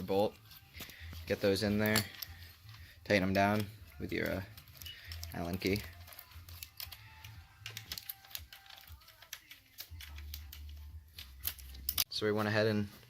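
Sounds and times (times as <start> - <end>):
metal tools clinking: 0.0 - 12.6
faint background music: 0.0 - 13.0.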